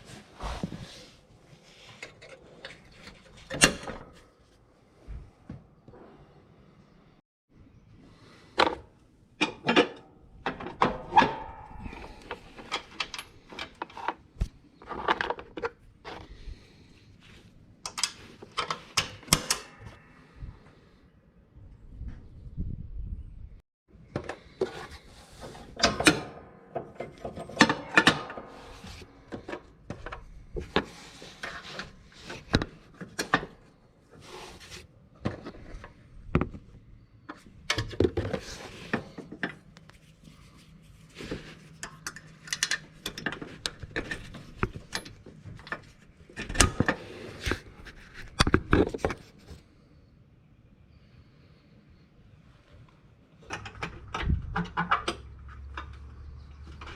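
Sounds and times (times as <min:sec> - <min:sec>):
metallic clanks and knocks of tools: 0:09.4 - 0:14.2, 0:25.8 - 0:30.9, 0:41.8 - 0:47.0.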